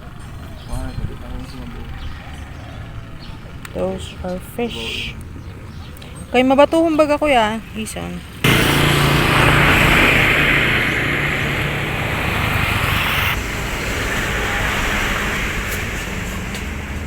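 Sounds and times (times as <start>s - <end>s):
vehicle engine running: 0.0s - 17.0s
loud hiss: 8.4s - 17.0s.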